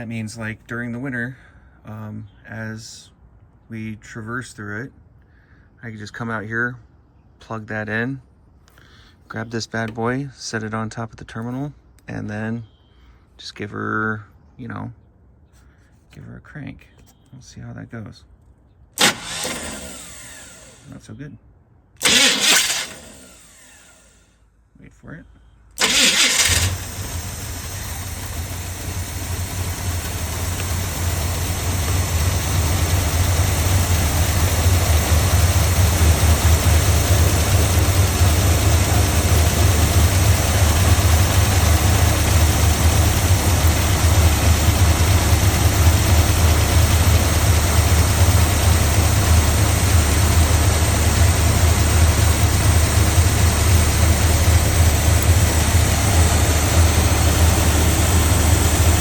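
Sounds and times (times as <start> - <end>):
engine idling: 19.0 - 20.9, 22.0 - 24.2, 25.8 - 59.0.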